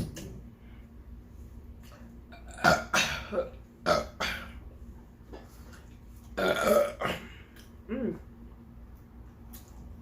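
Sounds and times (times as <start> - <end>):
person burping loudly: 2.3 - 4.6, 6.4 - 8.2.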